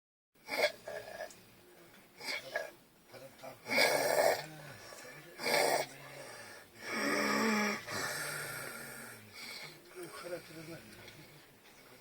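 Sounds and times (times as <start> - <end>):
noisy snort: 0.4 - 1.3, 2.2 - 2.7, 3.6 - 4.5, 5.4 - 5.9, 6.8 - 9.8.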